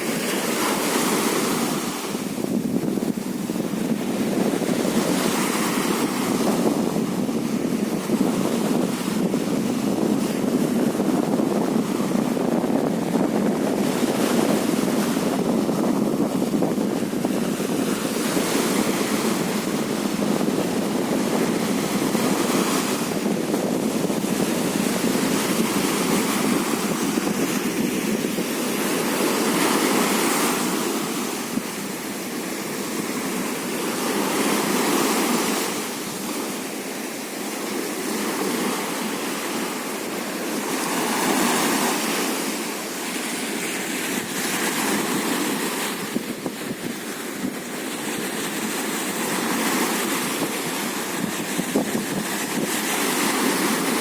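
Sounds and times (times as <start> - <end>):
waves washing on sandy beach: 0.0 - 54.0.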